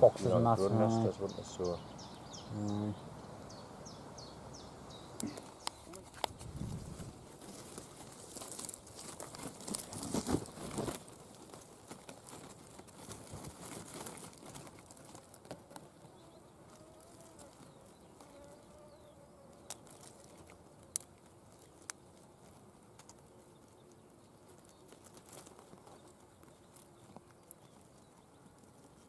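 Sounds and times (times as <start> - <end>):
faint rustling and crinkling: 4.9 - 29.0.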